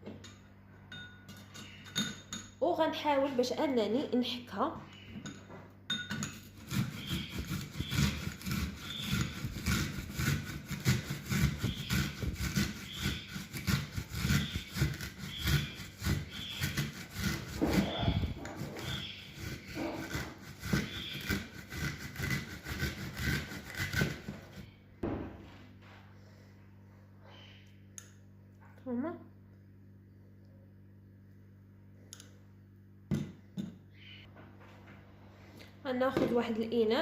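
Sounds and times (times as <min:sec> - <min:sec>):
onion grated on hand grater: 0:06.1 - 0:24.7.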